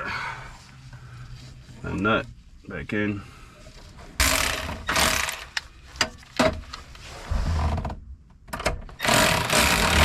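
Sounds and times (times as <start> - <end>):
small power tool whirring: 9.0 - 10.0.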